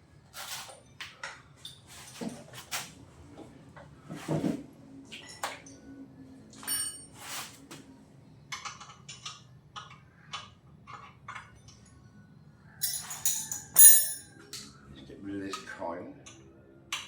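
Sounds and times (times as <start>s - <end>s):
metal clinks: 6.6s - 7.1s, 12.8s - 14.3s.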